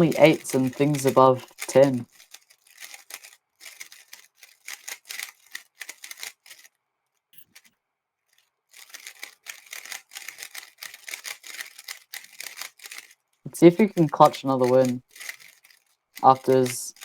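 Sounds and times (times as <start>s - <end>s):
puzzle cube layers clicking: 0.0s - 6.7s, 8.8s - 17.0s.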